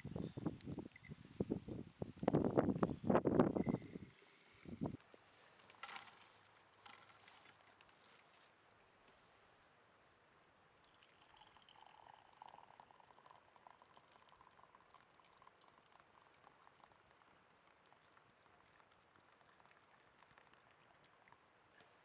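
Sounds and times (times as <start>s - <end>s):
faint bubbling liquid: 0.0s - 5.7s, 10.7s - 22.0s.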